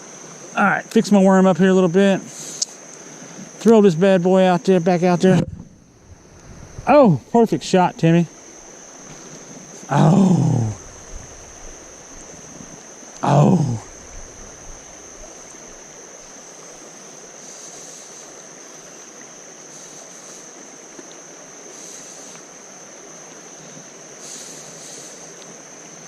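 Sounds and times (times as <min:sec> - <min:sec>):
thin high whine: 0:00.0 - 0:16.4
creek water running over rocks: 0:00.0 - 0:26.0.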